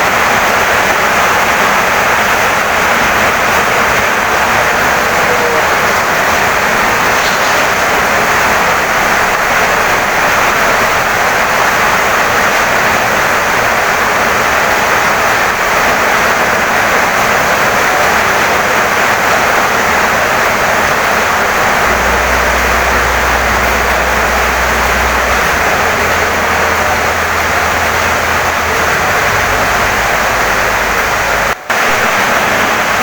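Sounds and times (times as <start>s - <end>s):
heavy rain on wooden house: 0.0s - 33.0s
low rumble: 20.9s - 31.6s.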